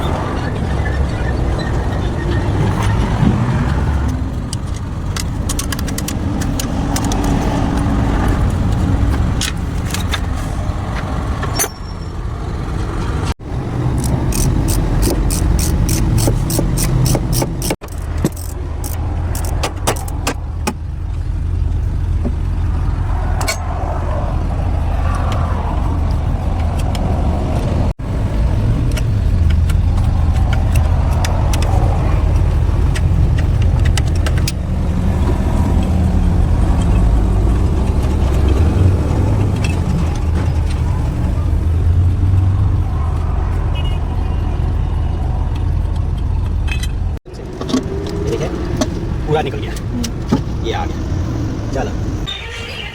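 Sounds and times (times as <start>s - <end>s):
engine droning: 0.0s - 52.9s
metallic clicks and taps: 4.0s - 10.2s.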